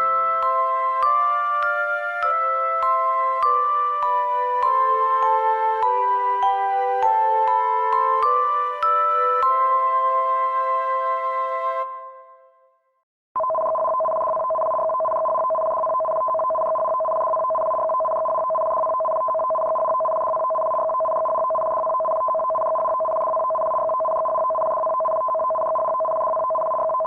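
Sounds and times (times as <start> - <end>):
electronic two-tone signal: 13.4 - 27.0.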